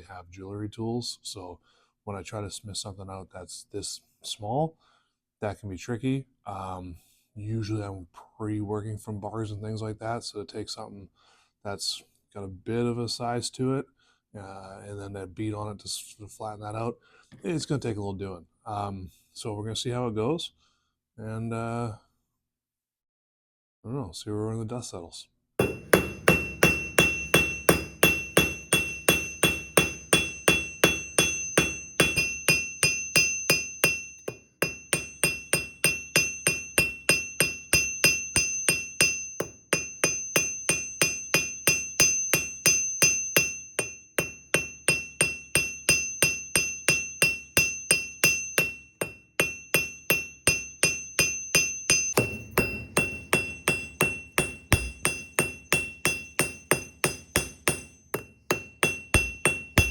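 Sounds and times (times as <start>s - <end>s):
hammer striking steel on anvil: 25.6s - 59.9s.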